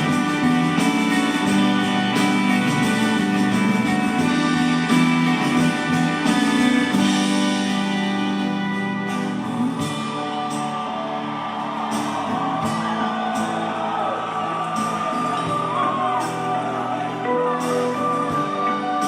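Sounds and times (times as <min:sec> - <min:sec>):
crowd shouting: 0:00.0 - 0:19.0
live rock band playing: 0:00.0 - 0:19.0
people singing: 0:12.8 - 0:19.0.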